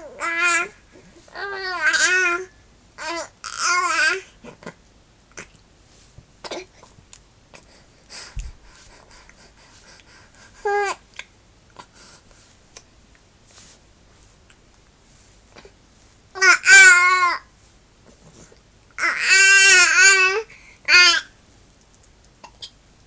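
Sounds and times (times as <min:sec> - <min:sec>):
baby babbling: 0:00.0 - 0:04.8, 0:16.4 - 0:17.5.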